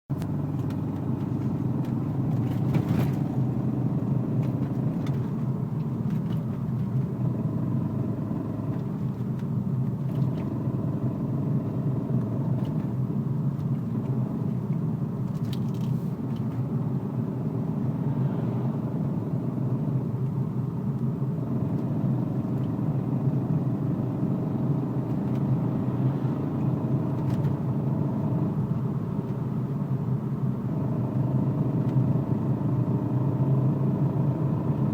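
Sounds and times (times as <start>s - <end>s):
car engine droning: 0.1s - 34.9s.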